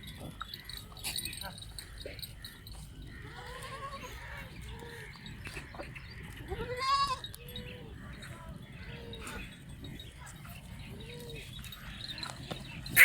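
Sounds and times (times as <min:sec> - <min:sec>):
goats bleating: 0:03.3 - 0:04.1, 0:06.5 - 0:07.3.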